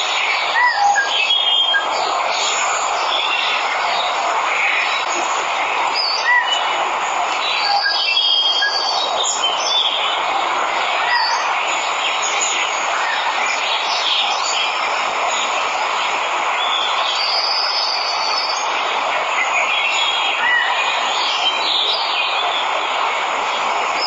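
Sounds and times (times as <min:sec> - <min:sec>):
waterfall rushing water: 0:00.0 - 0:24.0
birds chirping and whistling: 0:00.1 - 0:05.2, 0:05.8 - 0:06.7, 0:07.4 - 0:10.2, 0:11.0 - 0:15.4, 0:19.4 - 0:22.7.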